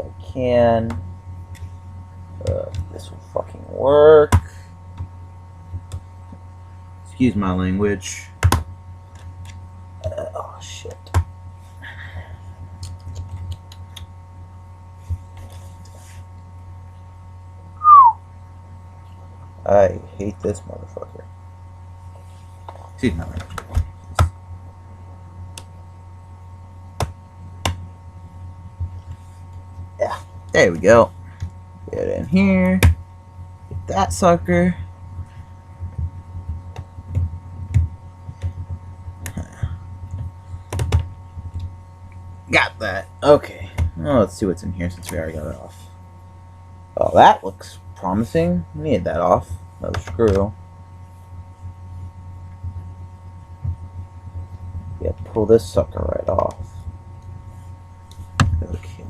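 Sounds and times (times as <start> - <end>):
steady electrical hum: 0.0 - 59.0
short squeak falling in pitch: 17.8 - 18.2.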